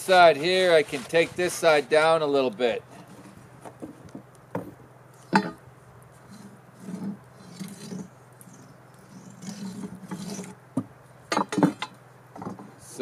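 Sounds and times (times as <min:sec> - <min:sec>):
sanding scraping on wood: 0:00.1 - 0:02.1.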